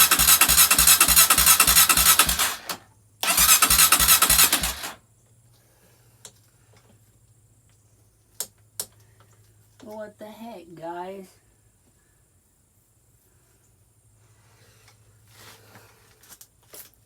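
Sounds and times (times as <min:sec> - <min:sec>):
engine cranking on electric starter: 0:00.0 - 0:05.0.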